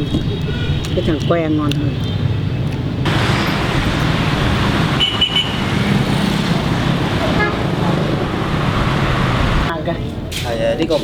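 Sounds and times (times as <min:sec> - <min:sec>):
street traffic: 0:00.0 - 0:11.0.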